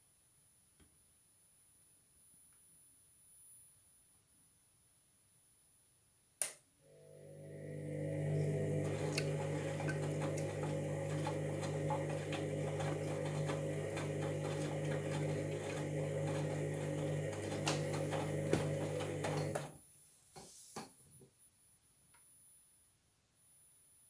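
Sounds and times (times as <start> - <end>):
washing machine motor humming: 6.9 - 19.8.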